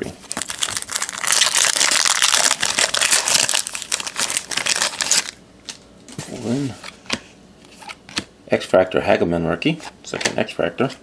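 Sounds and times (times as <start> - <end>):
foil wrapper crinkling: 0.2 - 5.8.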